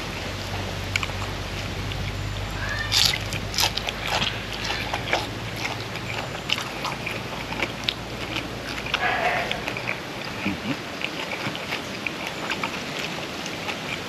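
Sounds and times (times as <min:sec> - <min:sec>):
low steady hum: 0:00.0 - 0:14.0
person chewing crunchy food: 0:00.0 - 0:14.0
wet mouth clicks: 0:02.9 - 0:14.0.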